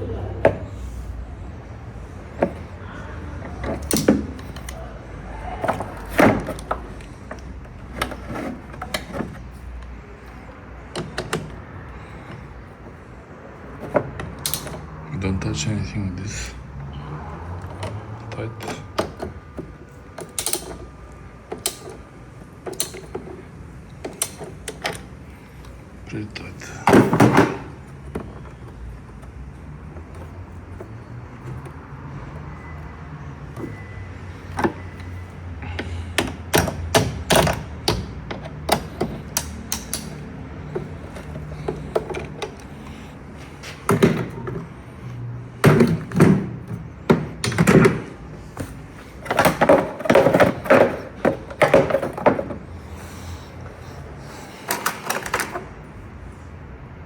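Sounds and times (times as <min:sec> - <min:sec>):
wrench clicking on nuts: 0:14.4 - 0:14.8, 0:36.2 - 0:40.3.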